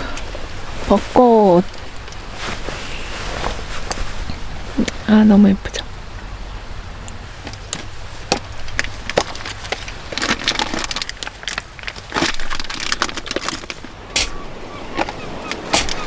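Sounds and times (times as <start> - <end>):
plastic packaging crinkling: 7.5 - 16.0.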